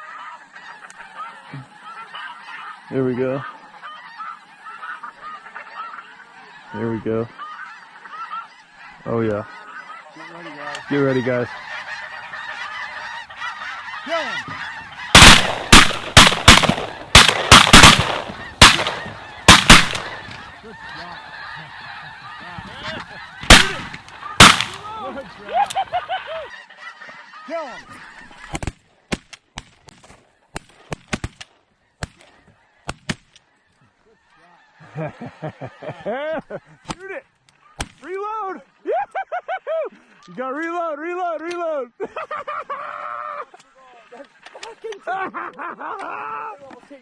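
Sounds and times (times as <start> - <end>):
geese honking: 0.0 - 47.0
sharp cracks: 15.1 - 20.4, 23.4 - 24.9, 28.5 - 33.4, 36.9 - 38.1
shotgun blasts: 15.2 - 20.2, 23.4 - 24.8.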